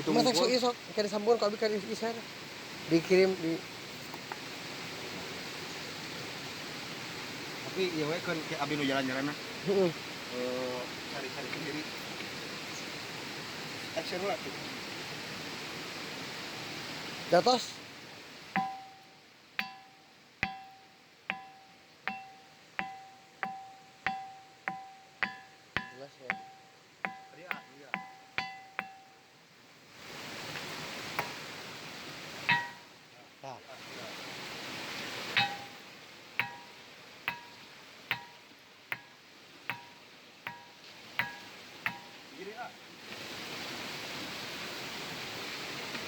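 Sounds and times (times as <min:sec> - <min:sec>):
ringing stone being struck: 0:18.6 - 0:29.3, 0:31.2 - 0:31.4, 0:32.4 - 0:33.0, 0:35.3 - 0:42.2.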